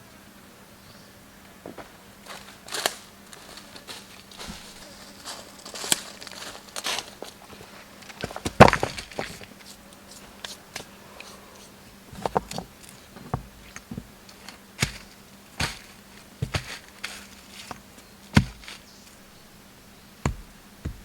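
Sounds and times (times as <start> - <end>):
sharp knocks and taps: 14.8 - 17.8, 20.2 - 21.0.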